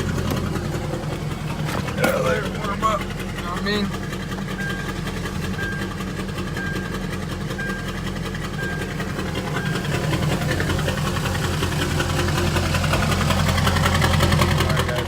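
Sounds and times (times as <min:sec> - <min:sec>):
diesel truck engines idling: 0:00.0 - 0:15.0.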